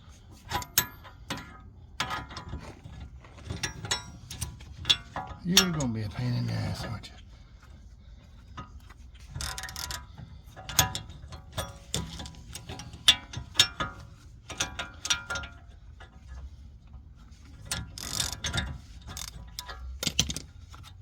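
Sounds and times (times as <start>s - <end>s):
ratchet clicking: 18.0s - 18.5s.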